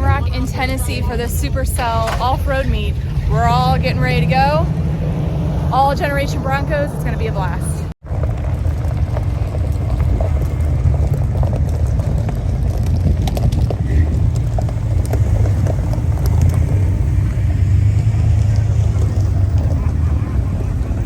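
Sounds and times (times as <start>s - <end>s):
vehicle engine and tyres rumbling: 0.0s - 21.0s
gravel and rocks knocking: 8.0s - 21.0s.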